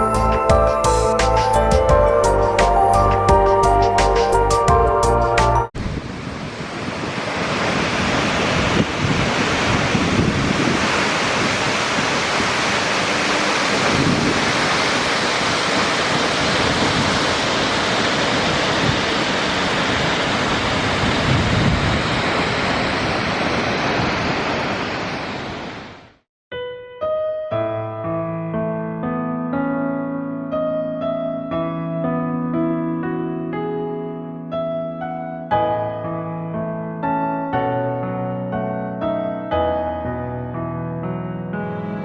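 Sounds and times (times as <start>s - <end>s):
waterfall roaring: 5.8s - 26.1s.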